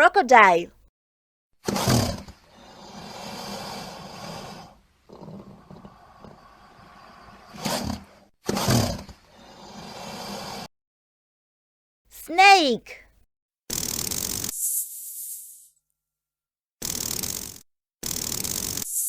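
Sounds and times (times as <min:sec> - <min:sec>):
crocodile growling: 0:02.0 - 0:09.0.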